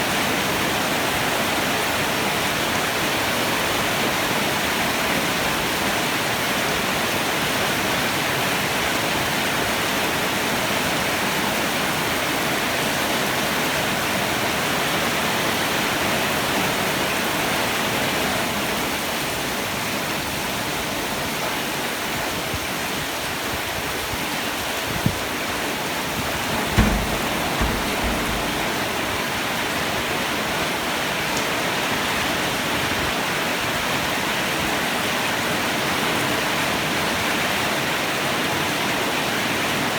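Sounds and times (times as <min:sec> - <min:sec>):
heavy rain pouring: 0:26.2 - 0:29.4
low thump: 0:26.5 - 0:29.0
sharp knock: 0:26.6 - 0:28.9.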